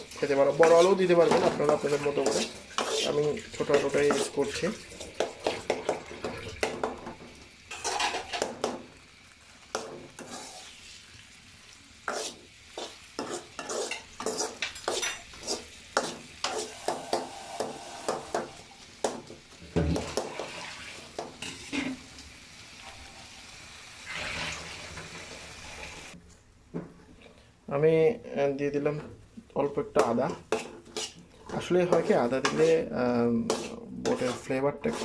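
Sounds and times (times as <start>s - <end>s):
spoon stirring and scraping: 0.0s - 6.9s, 7.7s - 8.8s, 9.7s - 11.0s, 12.0s - 18.6s, 29.9s - 35.0s
light sizzle: 0.0s - 35.0s
spoon clacking against pan: 5.0s - 7.1s, 12.1s - 19.2s, 30.0s - 32.8s.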